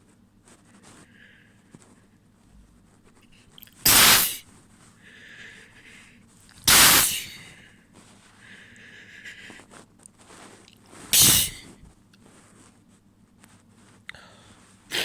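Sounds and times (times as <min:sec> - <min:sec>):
person sneezing: 0:03.8 - 0:04.4, 0:06.7 - 0:07.6, 0:11.2 - 0:11.7.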